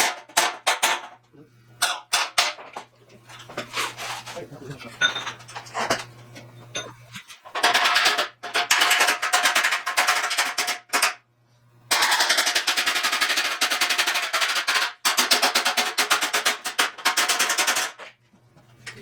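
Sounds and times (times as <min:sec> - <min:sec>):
power tool hammering metal: 0:11.9 - 0:18.0.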